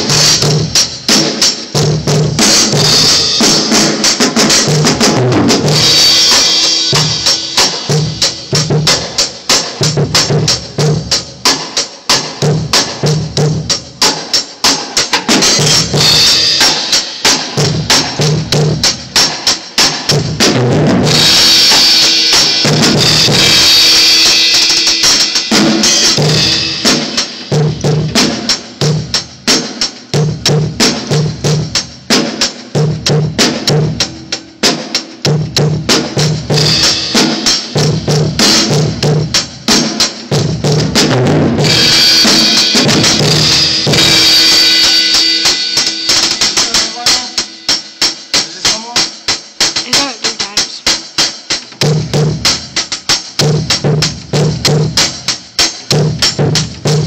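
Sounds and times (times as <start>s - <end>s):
kick and snare drum hits: 0.0s - 47.4s, 51.2s - 57.0s
cymbals crashing: 41.6s - 50.4s.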